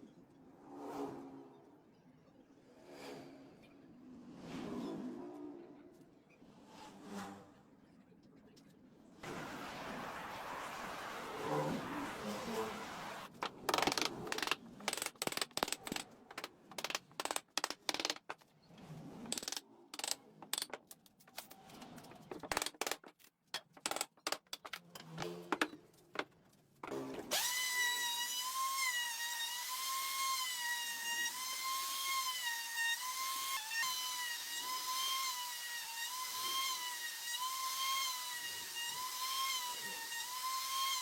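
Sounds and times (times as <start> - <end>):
clicks and knocks on wood: 13.4 - 18.4, 19.3 - 27.0.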